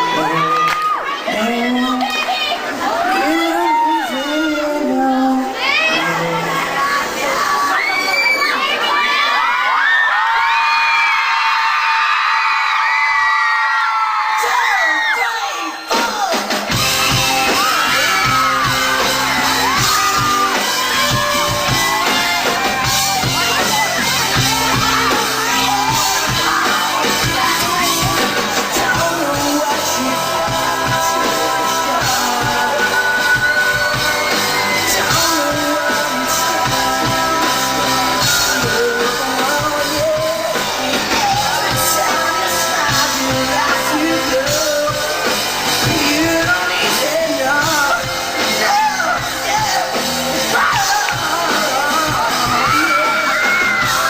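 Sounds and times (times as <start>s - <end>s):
live band music: 14.4s - 54.0s
person singing wordless runs: 23.7s - 33.9s.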